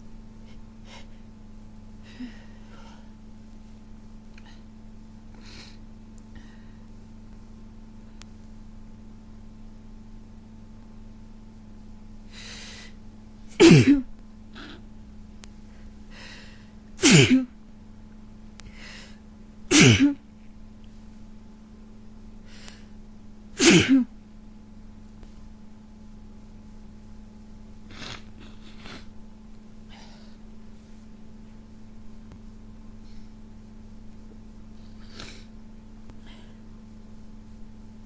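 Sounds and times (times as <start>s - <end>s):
faint breathing: 2.0s - 3.3s, 4.3s - 7.0s, 12.3s - 13.0s, 15.6s - 16.8s, 18.6s - 19.3s, 22.4s - 23.0s, 29.8s - 31.2s, 33.0s - 33.4s, 34.7s - 36.7s
noisy intake of breath: 2.0s - 3.3s, 4.4s - 7.0s, 12.2s - 13.1s, 15.6s - 17.1s, 18.6s - 19.3s, 22.4s - 23.0s, 29.8s - 31.2s, 34.7s - 36.7s
person sneezing: 13.5s - 14.8s, 17.0s - 17.5s, 19.7s - 20.2s, 23.6s - 24.1s.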